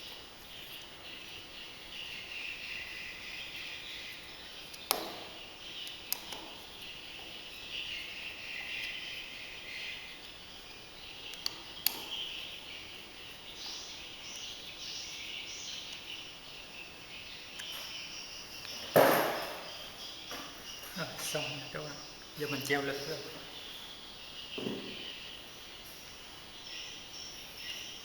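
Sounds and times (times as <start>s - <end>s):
insects chirring: 0.0s - 28.0s.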